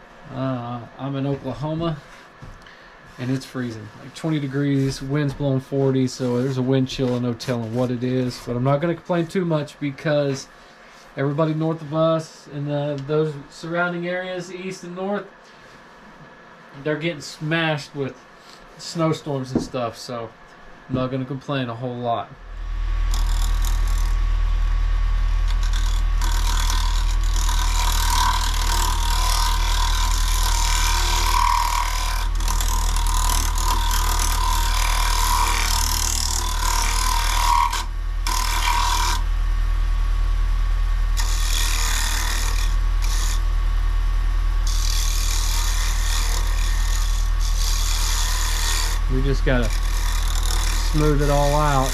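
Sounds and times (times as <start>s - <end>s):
turning tool scraping wood: 3.1s - 9.4s, 23.0s - 24.3s, 25.1s - 39.3s, 41.2s - 43.5s, 44.6s - 51.9s
lathe motor humming: 22.4s - 51.9s.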